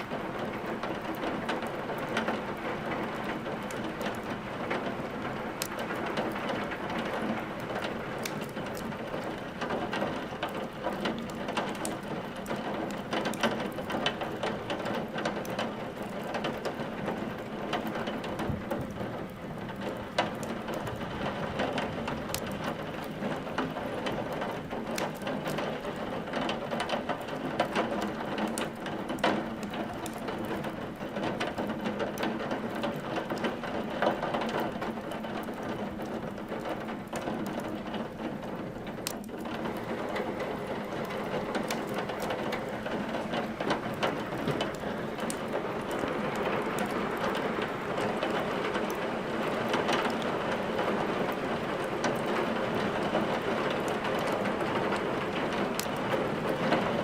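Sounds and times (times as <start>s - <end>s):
steady rain hiss: 0.0s - 57.0s
wood fire crackling: 0.0s - 57.0s.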